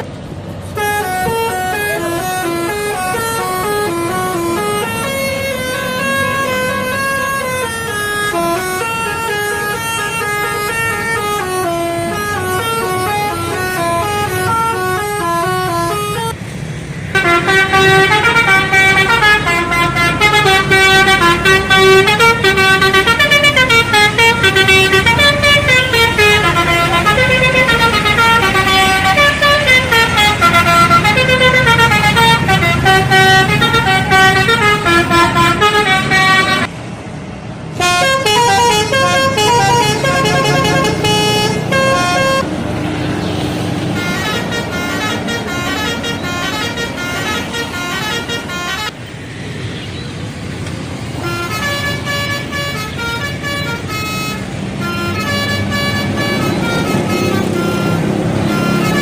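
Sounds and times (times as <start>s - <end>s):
bus horns playing melodic runs: 0.6s - 16.4s, 17.1s - 36.7s, 37.7s - 49.0s, 51.0s - 59.0s.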